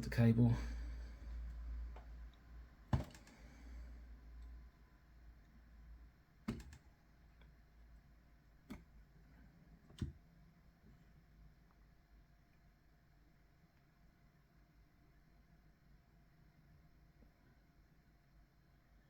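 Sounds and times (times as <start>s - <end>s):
faint low hum: 0.0s - 19.0s.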